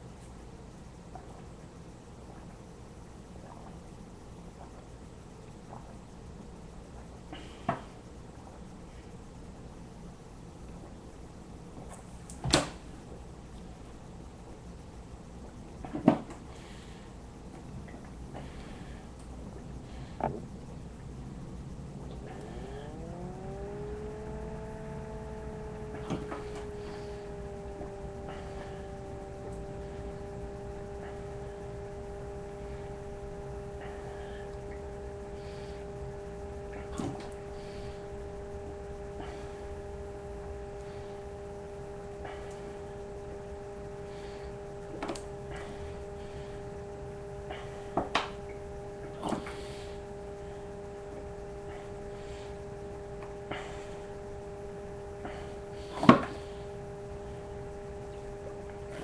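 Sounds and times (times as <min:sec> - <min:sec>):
machine hum rising in pitch: 0:18.0 - 0:59.0.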